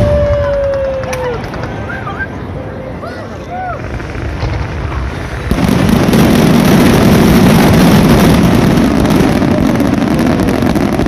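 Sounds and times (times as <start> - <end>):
firework spraying hiss: 3.8 - 11.0.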